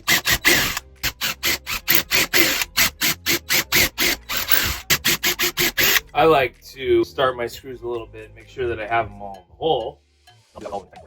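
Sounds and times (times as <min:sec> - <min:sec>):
tool rasping wood: 0:00.0 - 0:06.0.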